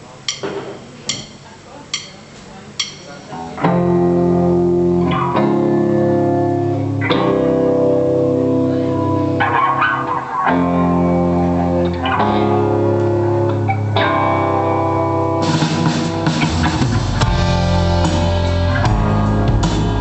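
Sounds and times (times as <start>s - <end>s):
bass guitar: 3.3s - 20.0s
electric guitar chords: 3.4s - 20.0s
drum kit with cymbals: 15.4s - 20.0s.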